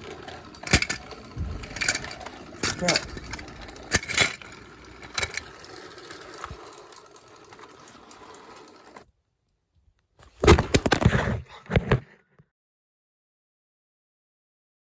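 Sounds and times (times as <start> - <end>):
handling knocks and clatter: 0.0 - 5.5.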